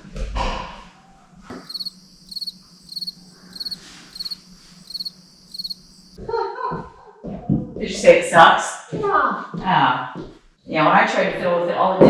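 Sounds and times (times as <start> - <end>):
cricket chirping: 1.5 - 6.2.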